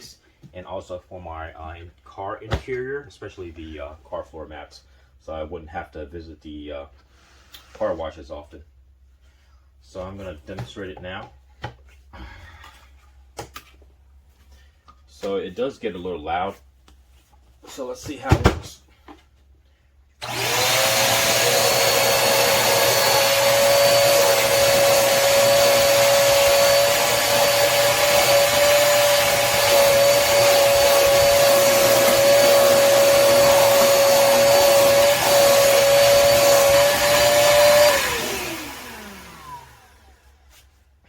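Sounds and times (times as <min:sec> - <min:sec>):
shop vacuum motor whine: 0:20.2 - 0:40.4.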